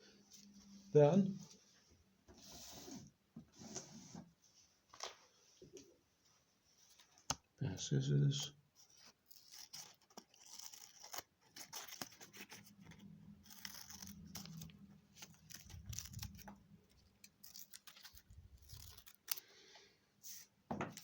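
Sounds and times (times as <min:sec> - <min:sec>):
scissors snipping paper: 0:08.8 - 0:19.5
paper rustling: 0:08.8 - 0:19.6.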